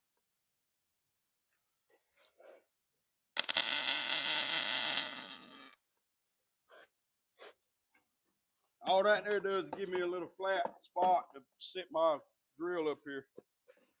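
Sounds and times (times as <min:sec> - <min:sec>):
welding arc crackling buzz: 0:03.4 - 0:05.8.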